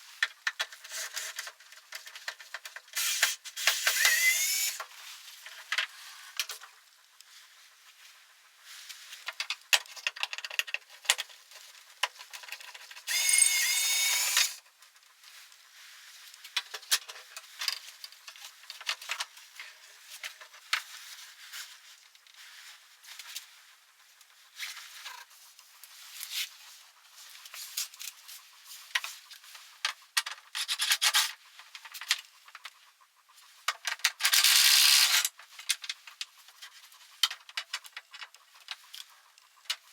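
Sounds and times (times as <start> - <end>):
tools clicking and tapping: 12.0 - 14.6
pitched whirring burst: 13.1 - 14.6.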